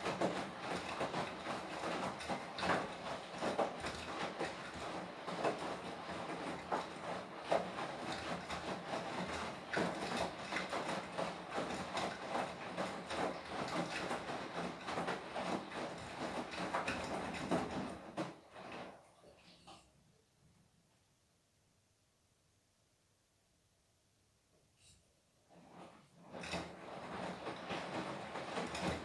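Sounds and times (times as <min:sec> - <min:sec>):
washing machine drum tumbling: 0:00.0 - 0:19.0, 0:25.7 - 0:29.0.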